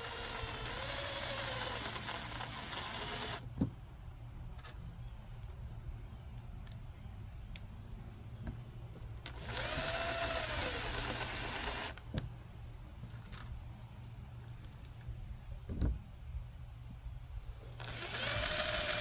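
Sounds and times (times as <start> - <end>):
power drill driving screw: 0.0 - 3.4, 9.3 - 12.0, 17.5 - 19.0.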